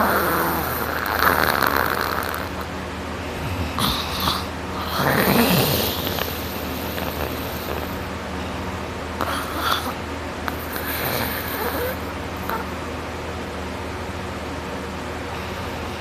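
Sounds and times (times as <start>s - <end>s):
person snoring loudly: 0.0s - 8.1s, 9.2s - 12.7s.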